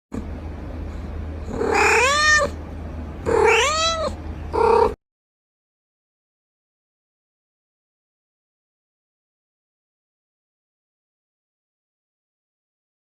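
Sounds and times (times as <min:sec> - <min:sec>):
steady low hum: 0:00.1 - 0:05.0
cat meowing: 0:01.5 - 0:02.6, 0:03.2 - 0:05.0.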